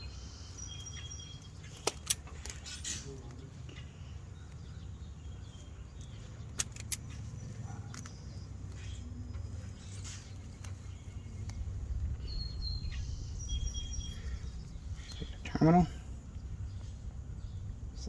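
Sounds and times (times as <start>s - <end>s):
bird chirping: 0.0s - 18.0s
low outdoor rumble: 0.0s - 18.0s
wire cutters snipping wire: 1.6s - 3.4s, 6.0s - 8.9s.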